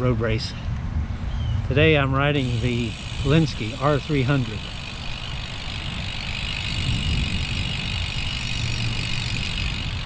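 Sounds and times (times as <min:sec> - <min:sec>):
wind rumbling on microphone: 0:00.0 - 0:10.0
bike riding hiss: 0:02.4 - 0:10.0.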